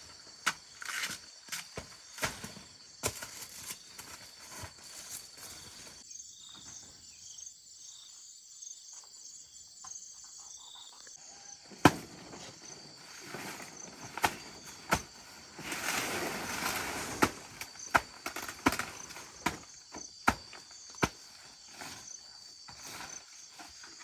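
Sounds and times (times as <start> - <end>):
crickets chirring: 0.0 - 24.0
rustling: 12.0 - 19.4.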